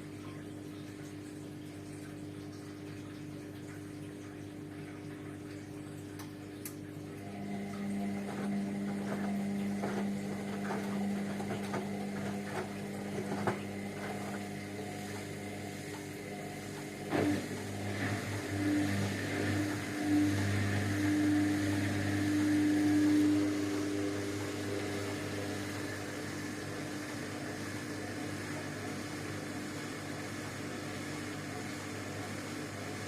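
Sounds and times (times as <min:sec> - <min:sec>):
washing machine pump humming: 0:00.0 - 0:33.0
water gurgling: 0:00.0 - 0:33.0
low motor hum: 0:02.0 - 0:33.0.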